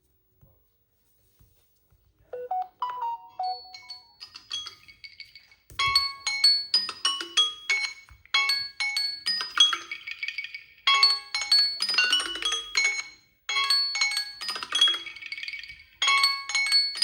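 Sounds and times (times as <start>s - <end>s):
phone alarm chiming melody: 2.4s - 4.2s.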